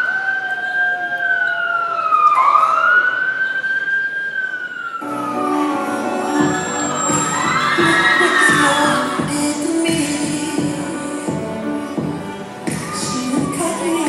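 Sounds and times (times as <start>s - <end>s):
wailing siren: 0.0s - 9.2s
music with a beat: 5.8s - 14.0s.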